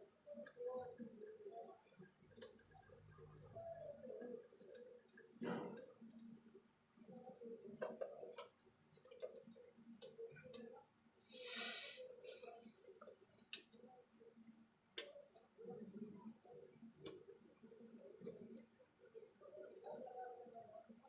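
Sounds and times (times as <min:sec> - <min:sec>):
faint murmur of voices: 0:10.1 - 0:21.0
short bursts of hiss: 0:11.3 - 0:12.8.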